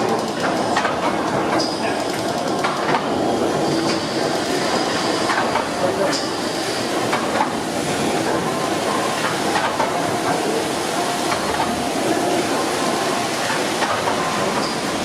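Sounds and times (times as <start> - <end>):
steam engine hiss: 3.1 - 15.0.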